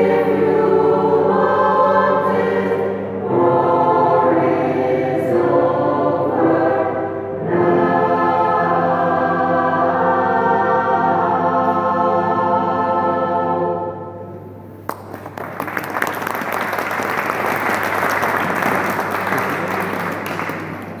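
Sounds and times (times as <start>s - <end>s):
choir holding a chord: 0.0s - 14.7s
audience applause: 14.9s - 21.0s.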